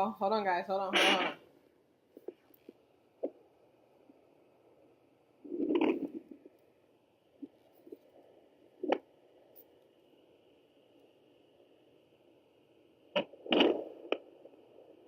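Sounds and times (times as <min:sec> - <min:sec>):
fetal doppler hissing: 0:00.9 - 0:01.5.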